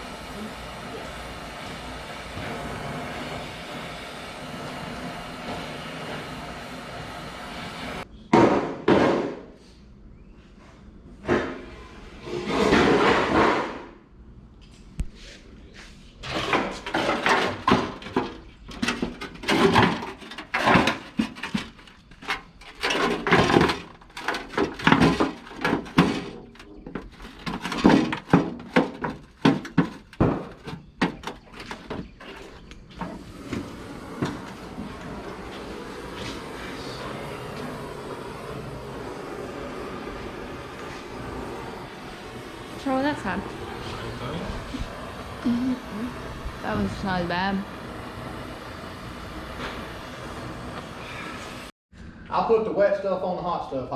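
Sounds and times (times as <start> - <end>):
steady hum: 0.0 - 8.1, 33.0 - 52.3.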